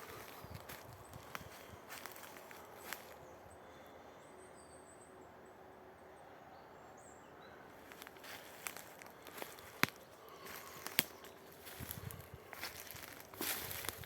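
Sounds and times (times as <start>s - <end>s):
footsteps on forest floor: 0.0s - 3.3s, 7.8s - 14.0s.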